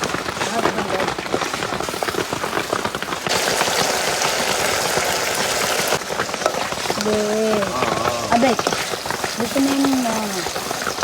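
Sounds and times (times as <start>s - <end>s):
food sizzling in hot oil: 0.0s - 11.0s.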